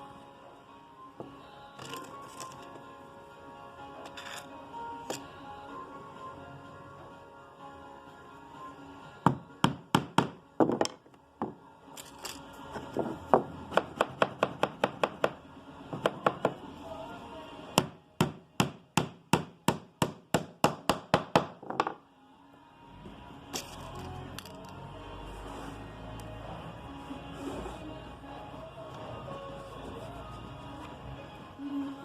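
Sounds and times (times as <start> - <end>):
hammer striking nail into wood: 9.3 - 11.0, 16.0 - 16.6, 17.8 - 22.0.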